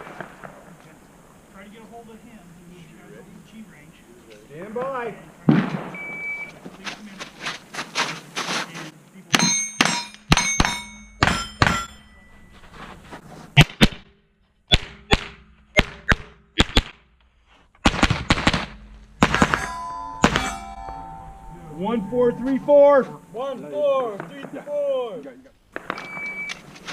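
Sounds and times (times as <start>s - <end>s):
rifle shots: 5.5s - 6.1s, 17.8s - 20.5s, 25.7s - 26.6s
ringing clang of steel plates: 9.4s - 12.9s, 18.7s - 23.6s.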